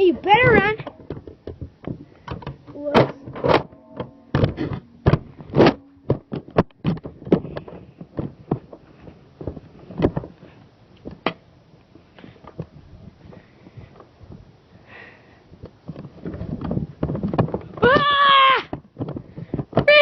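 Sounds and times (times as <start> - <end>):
sharp knocks and thuds: 0.3 - 8.8.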